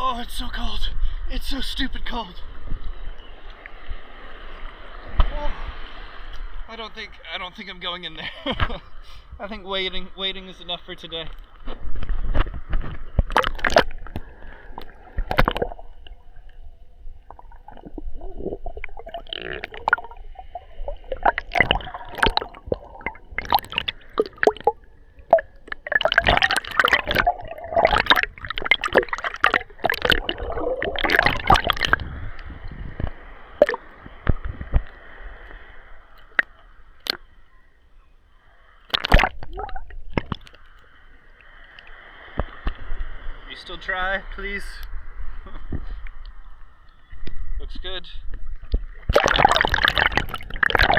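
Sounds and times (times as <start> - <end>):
muffled water sloshing and splashing: 11.0 - 37.6, 38.8 - 43.5, 48.2 - 50.9.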